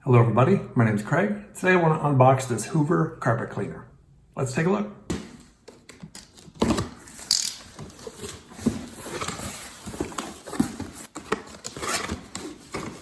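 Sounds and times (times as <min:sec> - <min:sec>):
contents knocking and rustling: 0:05.2 - 0:13.0
cardboard box being opened: 0:06.6 - 0:13.0.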